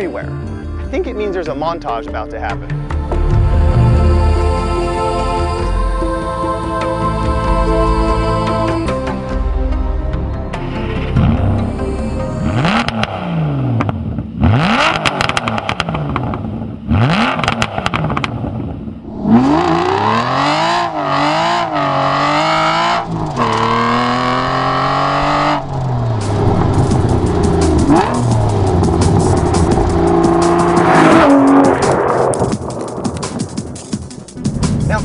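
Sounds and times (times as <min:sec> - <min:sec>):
car engine revving: 0:11.0 - 0:33.9
exhaust pops: 0:12.8 - 0:18.8, 0:22.5 - 0:35.0.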